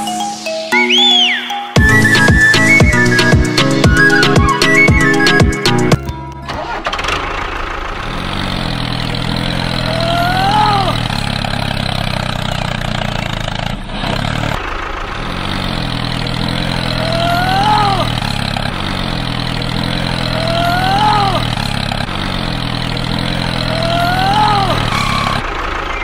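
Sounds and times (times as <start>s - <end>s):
music: 0.0s - 6.6s
engine running: 1.8s - 26.0s.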